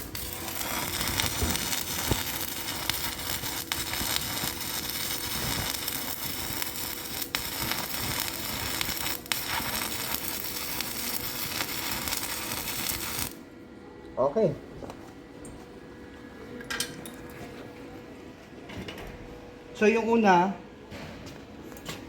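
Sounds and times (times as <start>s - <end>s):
welding arc crackling: 0.0s - 13.4s.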